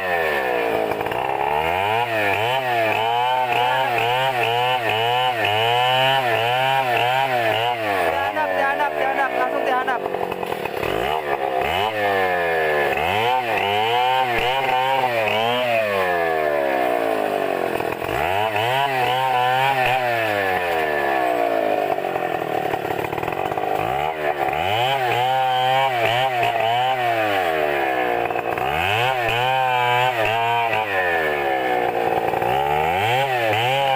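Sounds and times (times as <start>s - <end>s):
chainsaw cutting wood: 0.0s - 33.9s.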